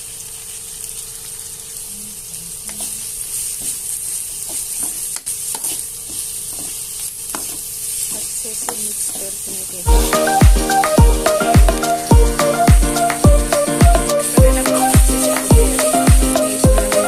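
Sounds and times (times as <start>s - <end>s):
vegetables sizzling in hot oil: 0.0s - 17.0s
spoon scraping a pan: 2.7s - 9.6s.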